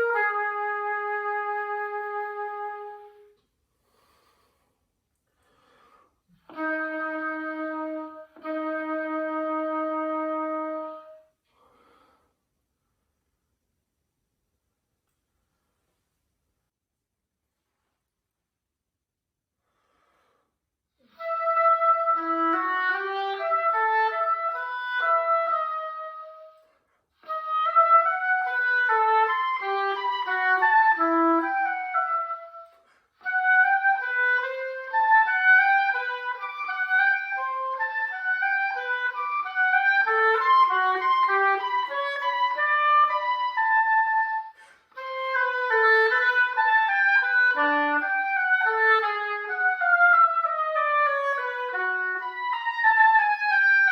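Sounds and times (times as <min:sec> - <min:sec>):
solo oboe playing: 0:00.0 - 0:04.4, 0:06.3 - 0:11.4, 0:21.0 - 0:53.9.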